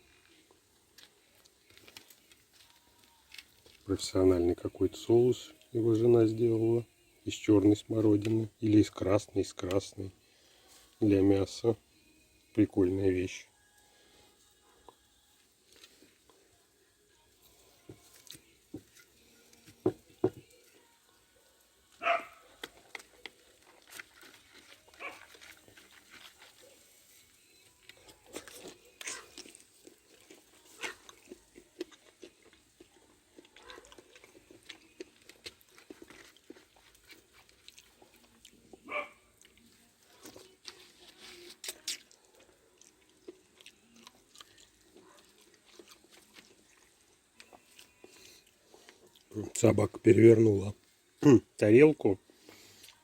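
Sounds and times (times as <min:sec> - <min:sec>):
dog chewing and crunching: 0:21.9 - 0:50.4
small dog yelping: 0:22.0 - 0:22.4.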